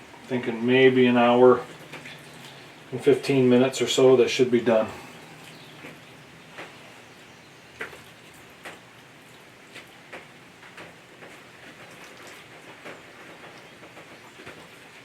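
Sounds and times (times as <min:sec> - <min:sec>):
wood crackling and popping: 0:07.7 - 0:15.0.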